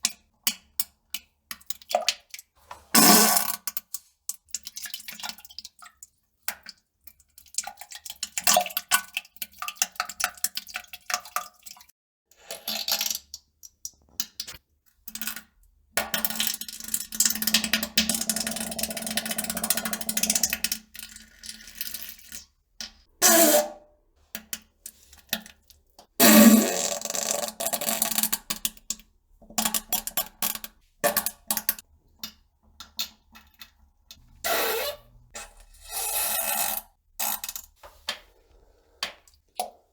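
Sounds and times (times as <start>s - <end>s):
person farting: 3.0s - 3.6s, 26.2s - 28.1s, 34.4s - 35.1s.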